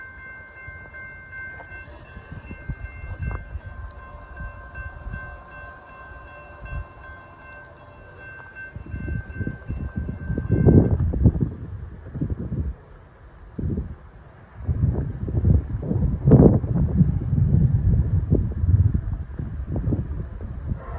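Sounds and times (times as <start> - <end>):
high ringing tones: 0.0 - 10.9
wind buffeting microphone: 0.6 - 20.9.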